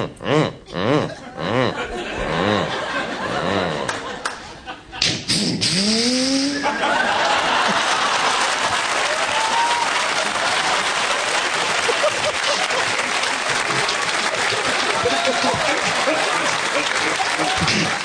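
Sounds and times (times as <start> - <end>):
audience cheering: 6.6 - 18.0
audience applauding: 6.8 - 18.0.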